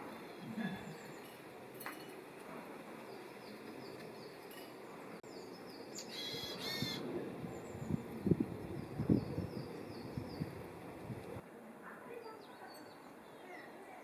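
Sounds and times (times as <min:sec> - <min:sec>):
songbirds chirping: 0:00.1 - 0:02.2, 0:02.8 - 0:11.4, 0:12.0 - 0:14.0
bird two-part call: 0:06.0 - 0:07.0.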